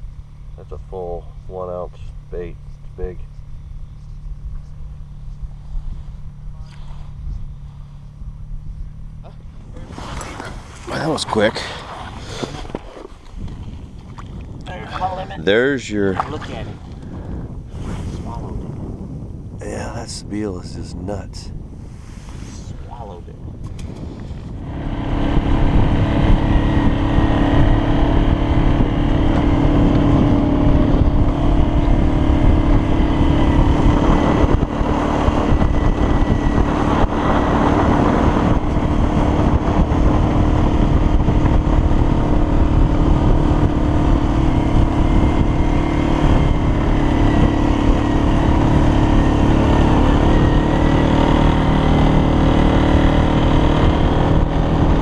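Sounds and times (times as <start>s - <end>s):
vehicle engine running at high speed: 0.0s - 15.7s, 21.1s - 55.0s.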